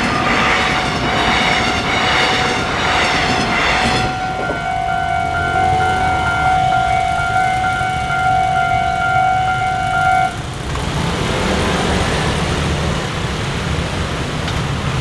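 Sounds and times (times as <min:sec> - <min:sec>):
vehicle horn tone: 0:00.6 - 0:10.4.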